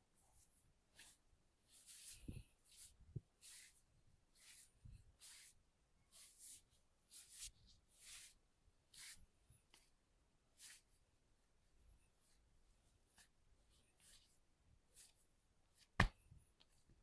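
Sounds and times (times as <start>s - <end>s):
hands rubbing skin in massage: 0.4s - 9.2s.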